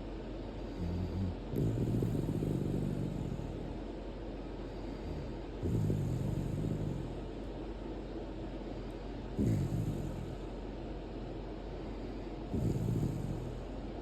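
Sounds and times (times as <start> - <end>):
dog snoring: 0.7 - 3.8, 4.8 - 7.4, 9.2 - 10.7, 12.1 - 14.0.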